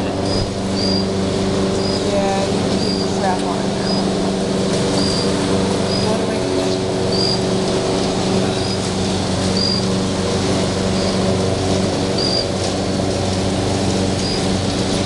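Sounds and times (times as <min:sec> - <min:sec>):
bird chirping: 0:00.2 - 0:01.1, 0:01.8 - 0:02.1, 0:02.8 - 0:03.2, 0:04.9 - 0:05.3, 0:07.1 - 0:07.4, 0:09.6 - 0:09.8, 0:12.2 - 0:12.5.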